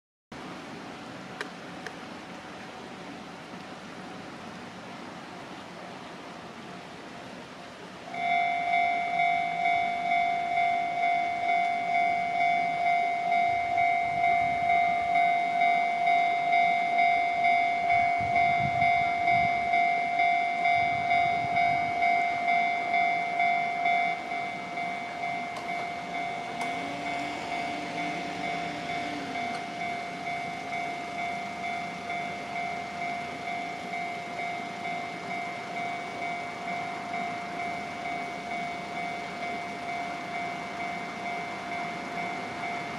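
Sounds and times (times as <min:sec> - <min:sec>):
train passing: 0:00.4 - 0:42.9
level-crossing alarm bell: 0:08.1 - 0:42.9.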